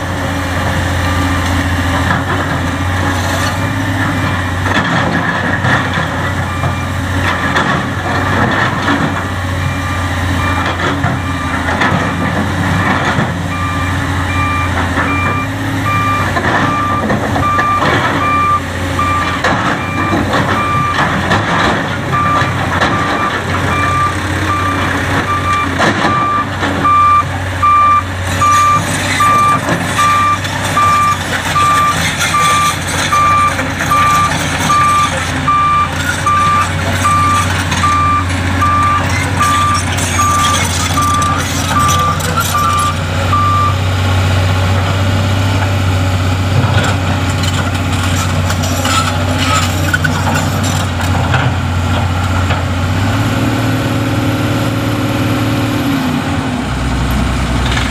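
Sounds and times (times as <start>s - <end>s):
diesel engine running: 0.0s - 57.9s
backup alarm beeping: 13.5s - 21.1s, 22.1s - 43.8s.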